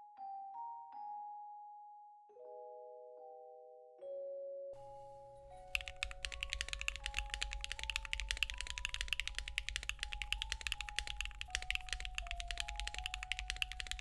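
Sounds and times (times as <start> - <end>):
mechanical keyboard typing: 4.8 - 14.0.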